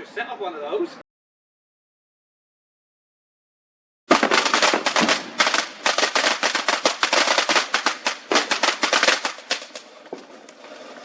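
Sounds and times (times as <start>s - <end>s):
fireworks cracking: 4.1s - 10.6s.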